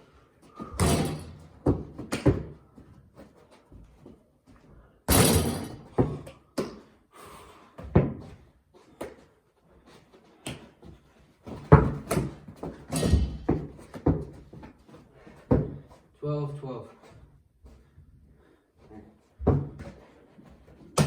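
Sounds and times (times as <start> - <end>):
basketball thudding: 0.7 - 2.6, 5.1 - 6.8, 11.5 - 14.4.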